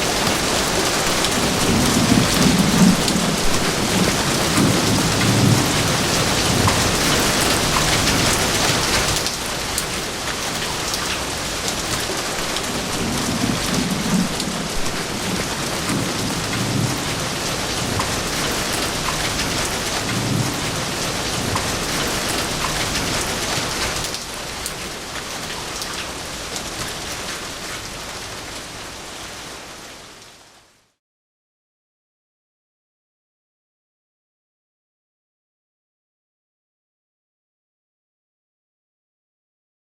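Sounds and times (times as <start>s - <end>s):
thunder rumbling: 0.0s - 9.8s, 11.3s - 24.0s
heavy rain falling: 0.0s - 31.0s.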